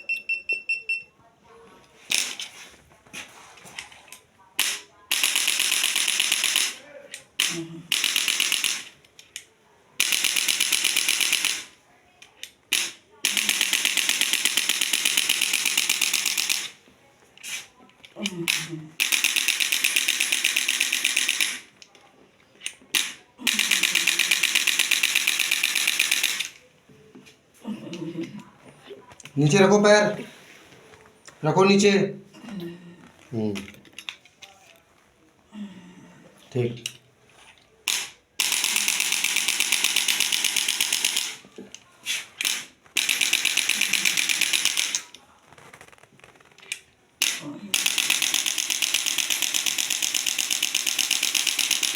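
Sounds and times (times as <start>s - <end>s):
motorised device tapping rapidly: 47.2s - 51.9s.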